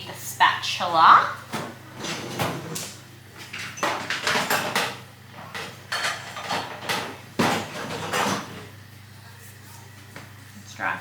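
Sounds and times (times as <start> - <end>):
kitchen utensils clattering: 1.5 - 8.8.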